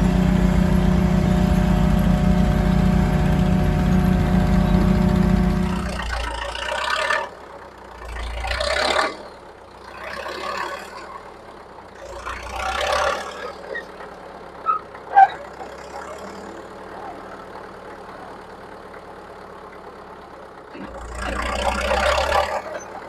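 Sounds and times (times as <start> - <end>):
heavy machinery engine running: 0.0 - 13.4, 15.5 - 23.0.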